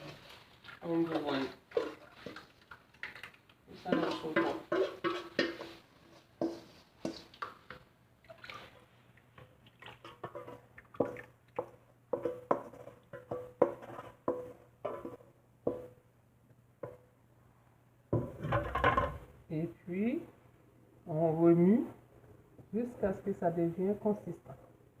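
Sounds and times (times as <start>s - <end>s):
wet plops of batter: 7.1s - 15.0s
spoon knocking on metal pot: 12.1s - 16.0s.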